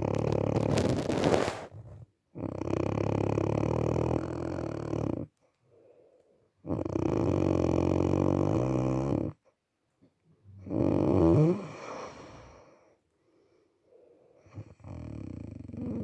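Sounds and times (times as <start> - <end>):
person snoring: 0.0 - 1.8, 10.6 - 12.6, 14.6 - 16.0.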